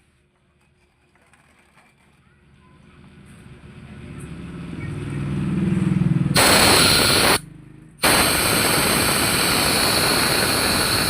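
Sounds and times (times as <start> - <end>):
compressed air blasts hissing: 6.4 - 7.4, 8.0 - 11.0.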